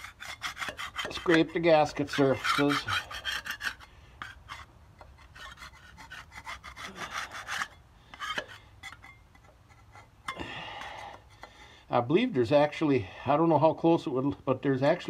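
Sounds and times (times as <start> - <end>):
hand scraper rasping on metal: 0.0 - 11.7.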